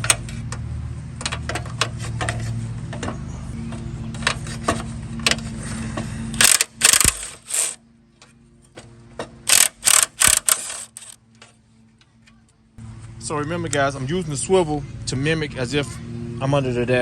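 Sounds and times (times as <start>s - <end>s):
socket ratchet clicking: 6.4s - 7.8s, 9.5s - 11.2s.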